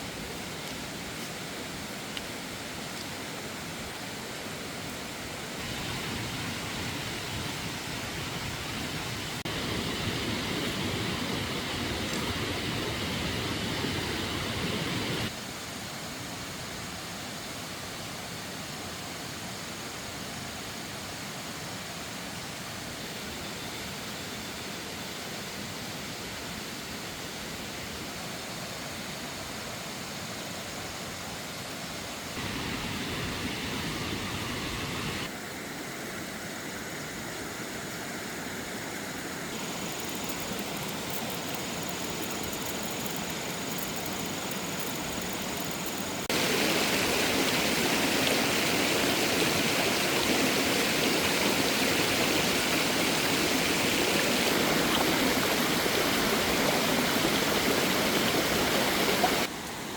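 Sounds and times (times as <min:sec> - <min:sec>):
water rushing: 0:00.0 - 0:15.4, 0:32.3 - 0:35.4, 0:38.2 - 0:59.9.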